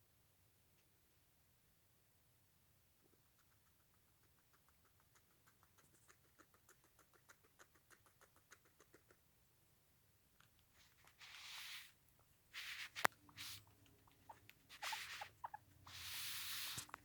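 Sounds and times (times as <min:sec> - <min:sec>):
guinea pig clicking: 0:03.0 - 0:09.4, 0:10.3 - 0:11.3, 0:12.6 - 0:17.0.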